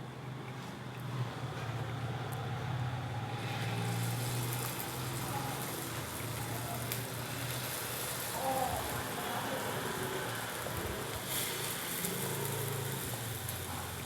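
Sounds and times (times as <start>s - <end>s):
ghee sizzling in a pan: 3.4s - 14.0s.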